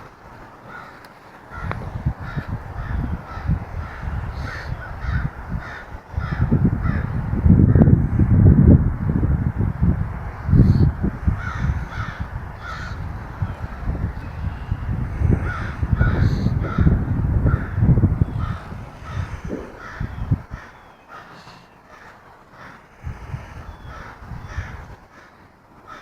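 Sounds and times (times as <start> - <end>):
crows cawing: 0.6 - 7.2, 11.4 - 13.1, 15.4 - 17.8, 18.4 - 23.0, 23.8 - 26.0
low thumping rumble: 6.2 - 20.7.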